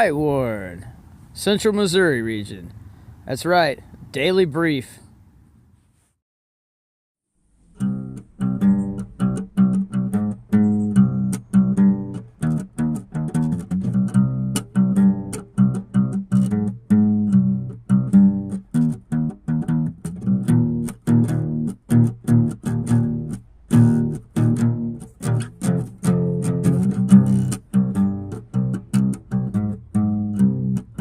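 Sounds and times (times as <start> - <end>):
plucked guitar music: 7.6 - 31.0.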